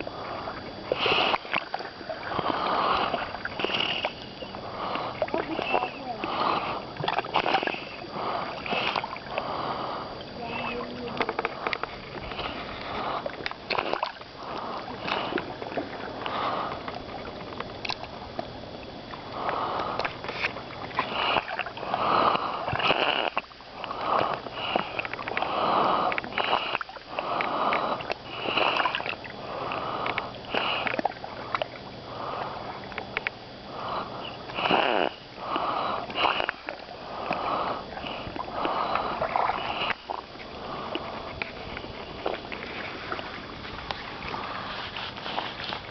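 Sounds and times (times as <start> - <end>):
water sloshing: 0.0 - 45.9
stone making raspy snoring sound: 33.9 - 36.6.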